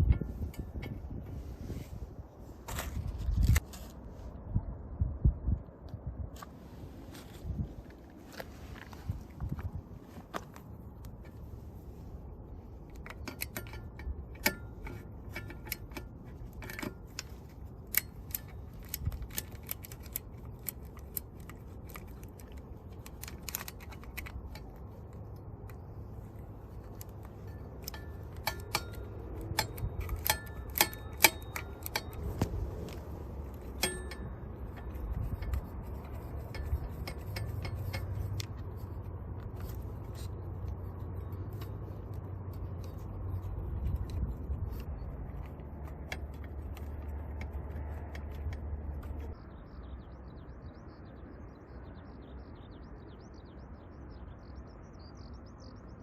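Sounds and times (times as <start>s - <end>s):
hand tools clinking on metal: 26.8s - 43.5s.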